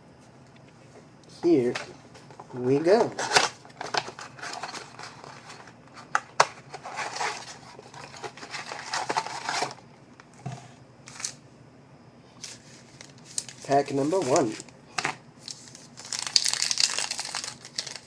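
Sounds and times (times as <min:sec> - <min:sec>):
plastic wrap crinkling and tearing: 0:15.4 - 0:18.0.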